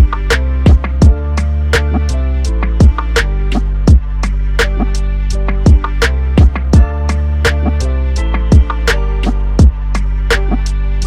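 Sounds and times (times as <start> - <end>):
punchy drum thumps: 0.0 - 1.2, 2.6 - 3.2, 3.9 - 4.1, 5.6 - 7.0, 8.5 - 9.0, 9.6 - 9.8
background music with steady beat: 0.0 - 11.0
sustained bass notes: 0.0 - 11.0.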